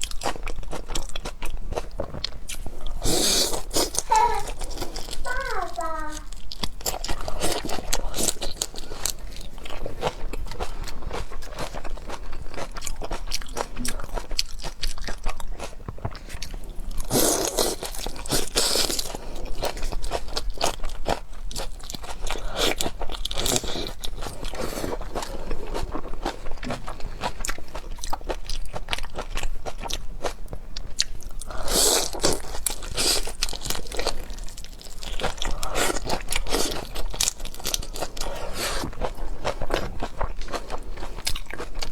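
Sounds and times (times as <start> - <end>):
crunching and chewing seafood: 0.0 - 41.9.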